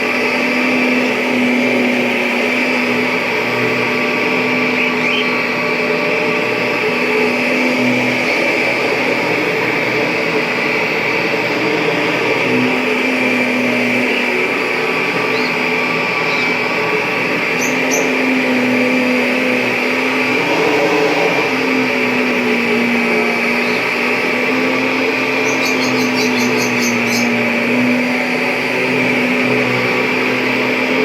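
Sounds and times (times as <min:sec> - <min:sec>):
vacuum cleaner running: 0:00.0 - 0:31.0.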